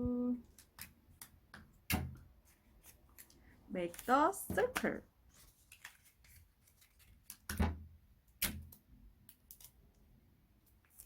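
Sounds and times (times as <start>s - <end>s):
paper rustling: 2.4s - 7.5s.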